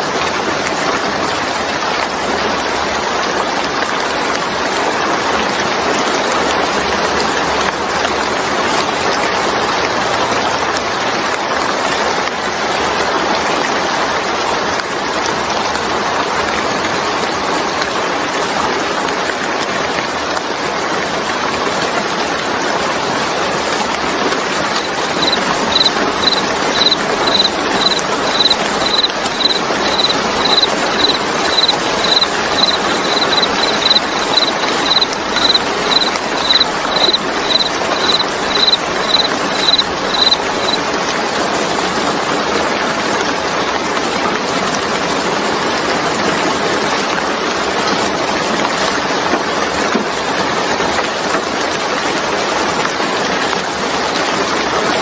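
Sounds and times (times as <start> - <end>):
steady rain: 0.0 - 55.0
high-pitched chirp: 24.8 - 40.8.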